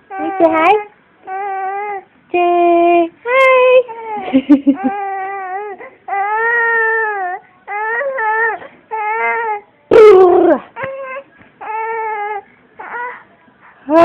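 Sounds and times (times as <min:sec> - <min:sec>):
baby shrieking: 0:04.8 - 0:13.2.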